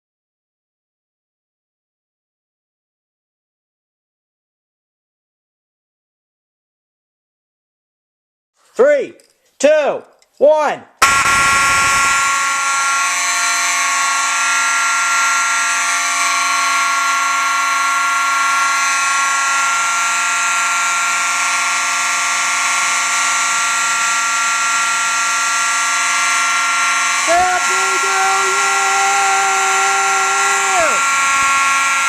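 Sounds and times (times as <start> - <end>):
many fire alarms sounding: 11.0 - 32.0.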